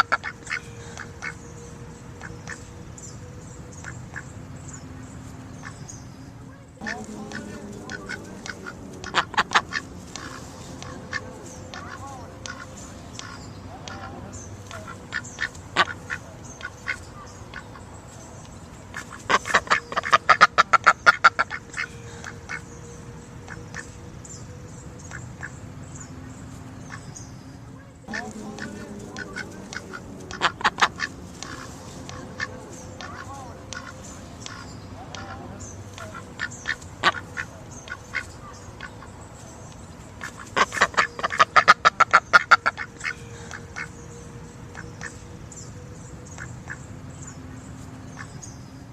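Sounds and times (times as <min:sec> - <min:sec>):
duck quacking: 0:00.0 - 0:01.4, 0:06.5 - 0:17.9, 0:18.9 - 0:22.7, 0:28.1 - 0:39.1, 0:40.1 - 0:44.0.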